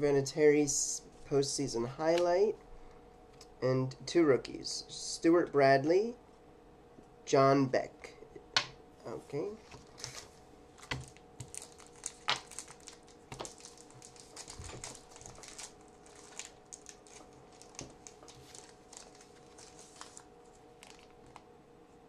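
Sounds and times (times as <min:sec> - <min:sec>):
wrapper crinkling: 0:09.7 - 0:21.4.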